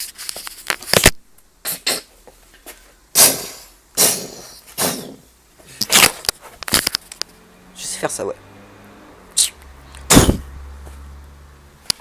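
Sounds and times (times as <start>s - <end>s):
man imitating gunfire with mouth: 1.6s - 2.1s, 3.1s - 6.1s, 9.4s - 10.5s.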